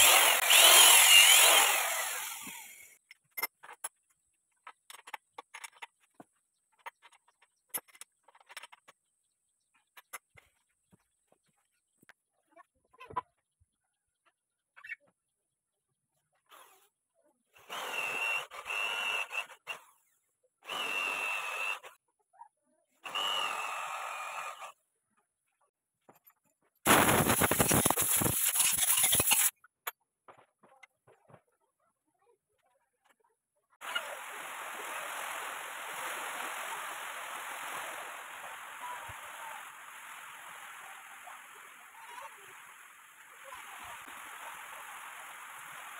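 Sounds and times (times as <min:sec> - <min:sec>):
electric power drill whining: 0:00.0 - 0:03.0.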